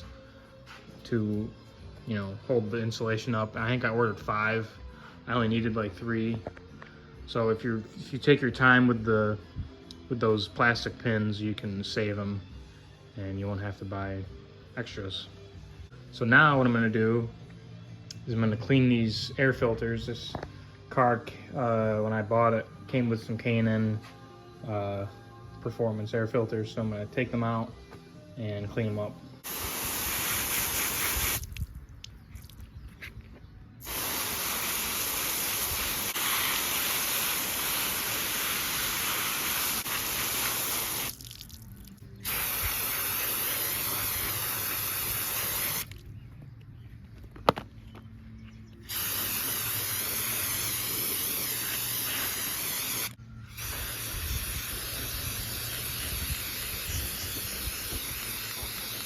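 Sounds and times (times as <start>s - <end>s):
liquid spraying: 29.4s - 31.7s, 33.8s - 46.0s, 48.9s - 59.0s.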